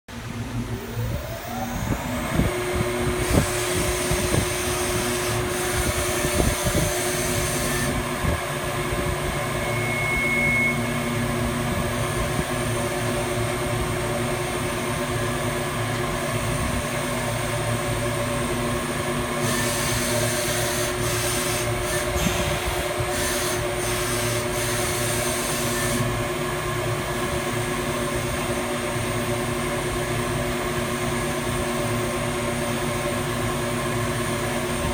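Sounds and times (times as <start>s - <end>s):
grinder motor whine: 0.6s - 17.2s, 18.1s - 27.0s.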